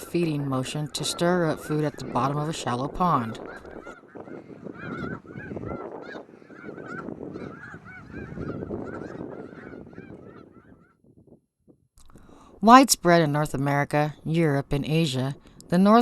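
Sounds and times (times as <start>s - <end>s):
flock of geese honking: 0.2s - 11.0s.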